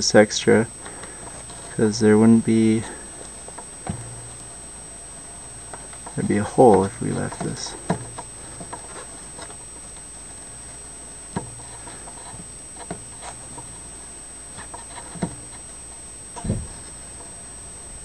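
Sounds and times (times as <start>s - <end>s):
low hum and hiss: 0.0s - 18.0s
dull thump: 3.8s - 4.4s, 7.4s - 8.8s, 11.3s - 11.7s, 16.4s - 17.0s.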